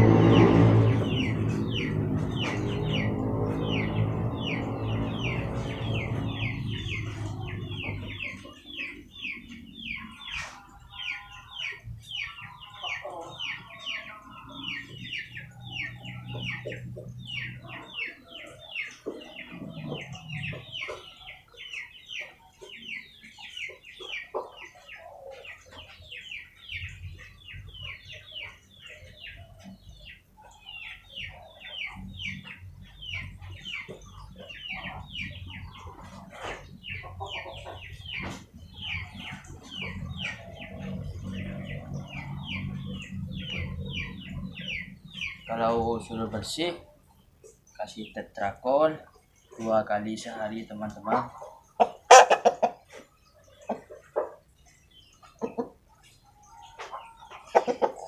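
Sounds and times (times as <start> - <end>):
chickens clucking: 0.0 - 58.0.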